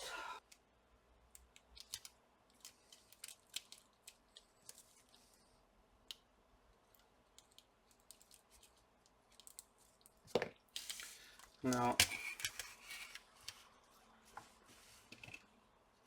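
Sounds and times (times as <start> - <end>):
tape clicking and crackling: 1.3 - 13.7.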